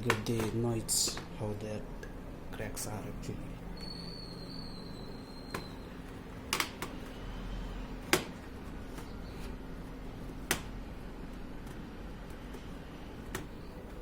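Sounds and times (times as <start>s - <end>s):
plastic clips cracking loose: 6.5s - 7.0s.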